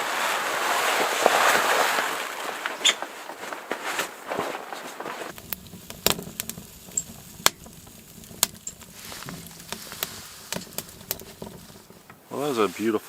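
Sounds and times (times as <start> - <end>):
firewood crackling and popping: 0.0 - 13.0
wind noise: 5.2 - 12.8.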